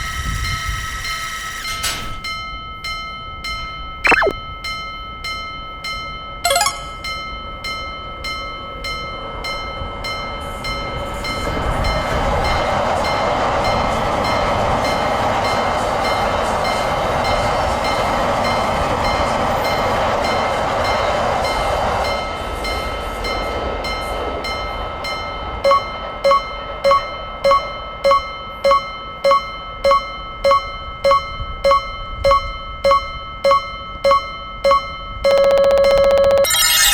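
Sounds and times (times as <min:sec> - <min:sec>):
short high pitched notes: 0:04.1 - 0:04.4, 0:06.5 - 0:07.1, 0:36.4 - 0:36.9
railroad crossing alarm dinging: 0:25.0 - 0:36.9.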